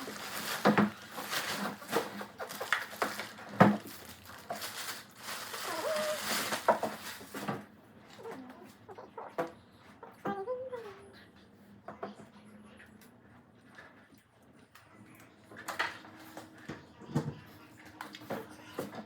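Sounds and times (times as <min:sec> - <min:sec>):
plastic and paper crinkling: 0:00.0 - 0:08.4.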